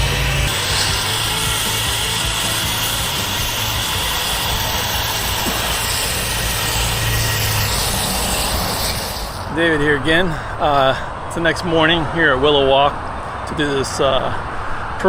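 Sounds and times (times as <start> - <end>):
motor engine humming: 0.0 - 11.2.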